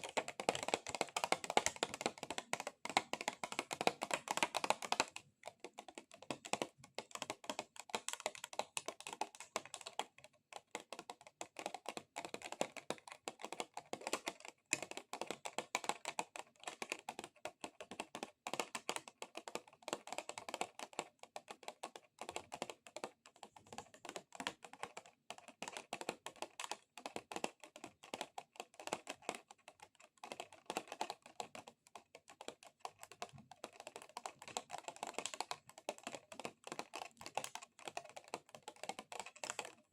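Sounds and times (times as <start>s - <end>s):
fingernails tapping on plastic: 10.7s - 29.4s.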